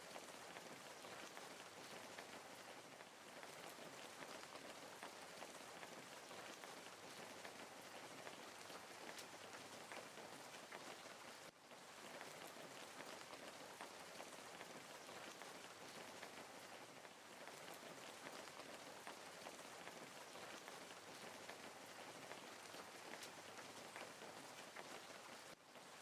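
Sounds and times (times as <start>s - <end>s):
wood fire crackling: 0.0s - 26.0s.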